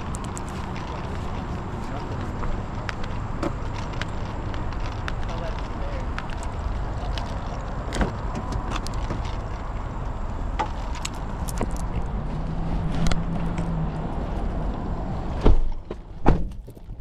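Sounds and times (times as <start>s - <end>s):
car engine rumble: 0.0s - 17.0s
car doors shutting: 7.9s - 9.3s, 15.3s - 16.6s.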